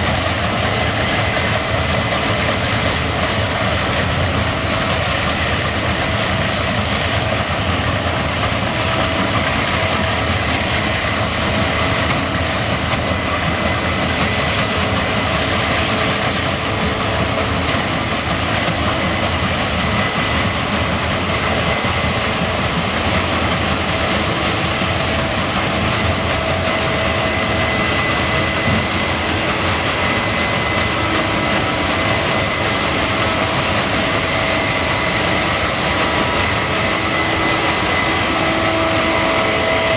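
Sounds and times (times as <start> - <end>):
combine harvester running: 0.0 - 39.9
faint steady whines: 0.0 - 39.9.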